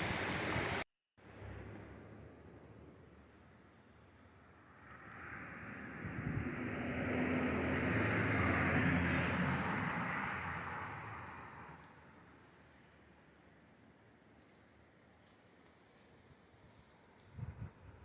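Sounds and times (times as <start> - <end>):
vehicle passing by: 4.4 - 12.3.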